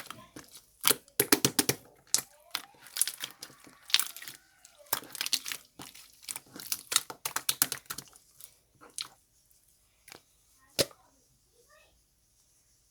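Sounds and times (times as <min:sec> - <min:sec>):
slime squished by hand: 0:00.0 - 0:09.2, 0:10.1 - 0:11.0.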